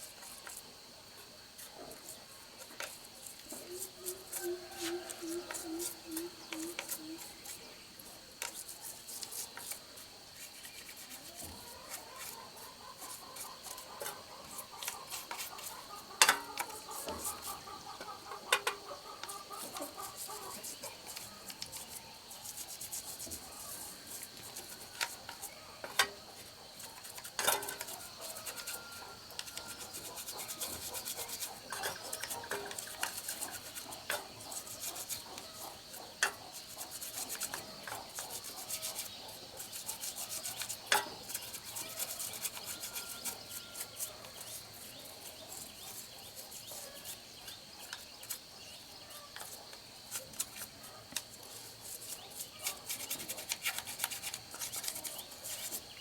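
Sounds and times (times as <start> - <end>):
rubbing and rasping of filing: 2.8 - 7.7, 8.4 - 48.4, 49.3 - 56.0
tools and metal parts knocking: 26.8 - 28.7.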